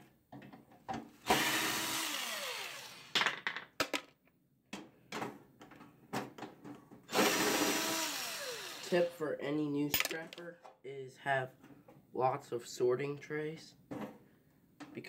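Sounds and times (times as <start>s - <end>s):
cordless drill running: 1.2s - 3.1s, 7.1s - 9.2s.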